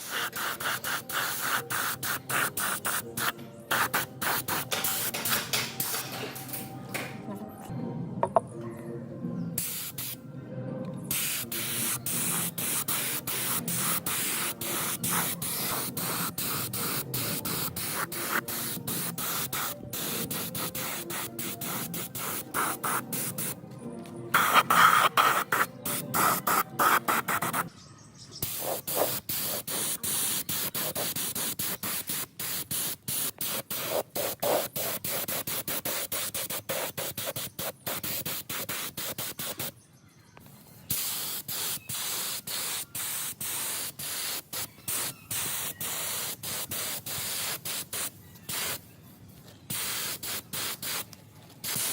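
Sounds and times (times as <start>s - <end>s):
compressed-air jet hissing: 0.0s - 6.1s, 11.1s - 23.6s, 24.4s - 27.7s, 28.4s - 39.7s, 40.9s - 48.8s, 49.7s - 51.0s.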